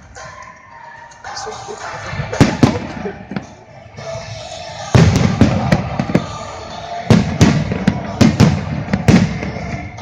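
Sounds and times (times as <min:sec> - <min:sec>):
fireworks bangs: 0:02.0 - 0:03.5, 0:04.8 - 0:10.0.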